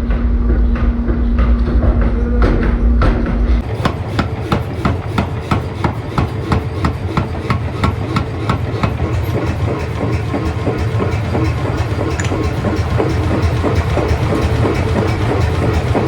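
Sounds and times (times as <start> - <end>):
low machine hum: 0.0 - 16.0
forging hammer striking metal: 3.6 - 16.0.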